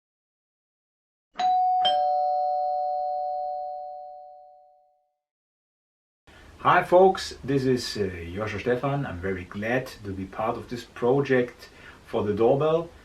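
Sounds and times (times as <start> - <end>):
two-tone doorbell chime: 1.4 - 5.0.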